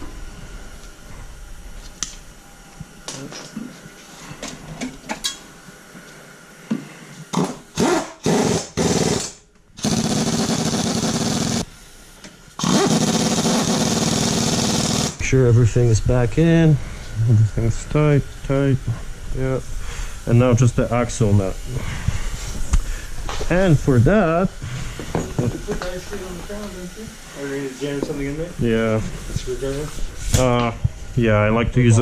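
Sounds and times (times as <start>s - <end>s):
power tool tightening fasteners: 7.4s - 11.6s, 12.6s - 15.2s.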